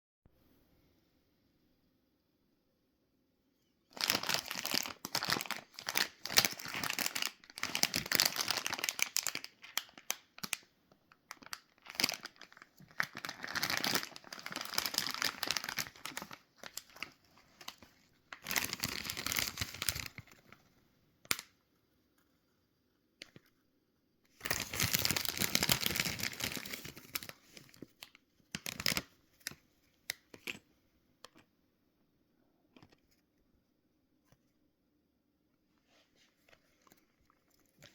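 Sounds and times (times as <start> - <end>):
plastic packet crinkling: 3.9 - 20.5, 24.3 - 30.6.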